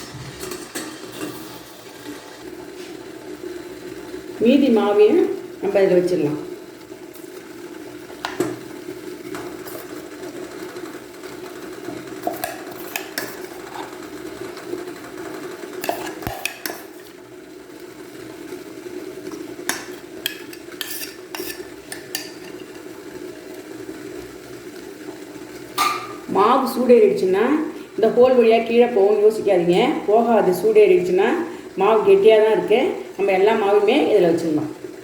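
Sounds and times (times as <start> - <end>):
low hum of boiling pot: 0.0 - 35.0
utensil scraping metal plate: 12.2 - 13.9, 15.8 - 17.1, 19.7 - 22.8.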